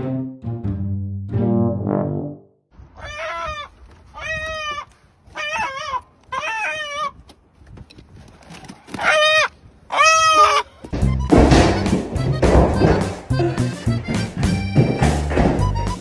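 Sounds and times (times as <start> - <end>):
chicken squawking: 2.9 - 7.2, 8.9 - 11.3.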